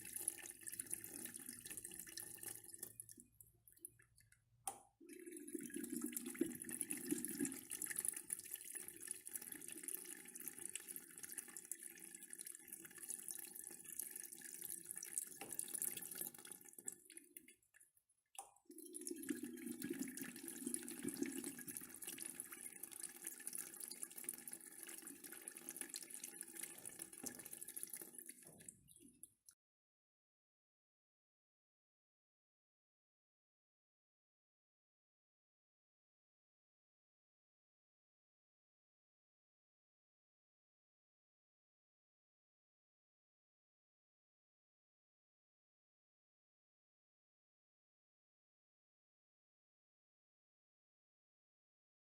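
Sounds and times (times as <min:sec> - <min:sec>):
urinal flushing: 0:00.0 - 0:03.3, 0:05.0 - 0:17.5, 0:18.7 - 0:29.3.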